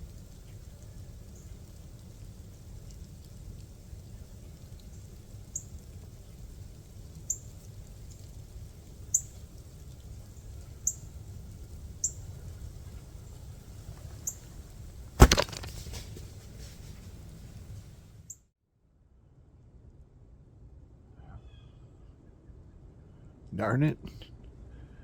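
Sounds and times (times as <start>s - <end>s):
low steady hiss: 0.0s - 21.2s, 22.2s - 25.0s
faint high ticks: 0.1s - 12.2s
scatter of small sounds: 14.9s - 18.0s.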